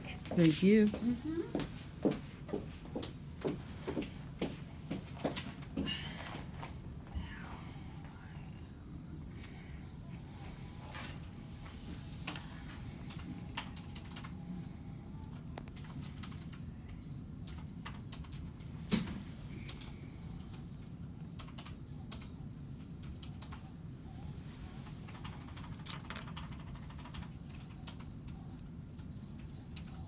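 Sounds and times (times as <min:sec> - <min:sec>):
computer keyboard typing: 0:13.1 - 0:14.4, 0:15.3 - 0:18.7, 0:19.7 - 0:23.7, 0:24.8 - 0:30.0.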